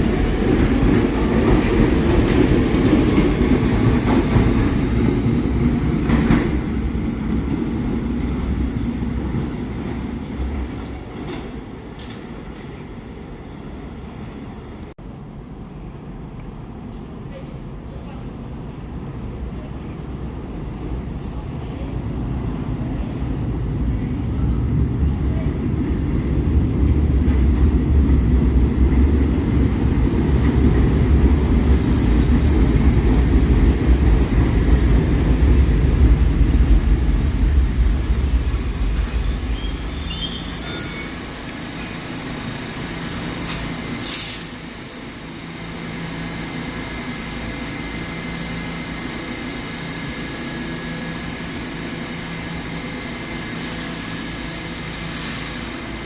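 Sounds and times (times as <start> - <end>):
subway train rumbling: 0.0 - 56.0
air hiss: 31.5 - 33.4, 43.9 - 44.7, 53.5 - 56.0.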